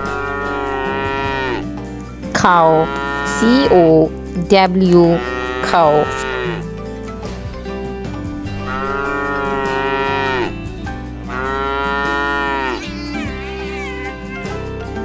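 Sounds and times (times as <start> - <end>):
cow mooing: 5.2 - 6.6.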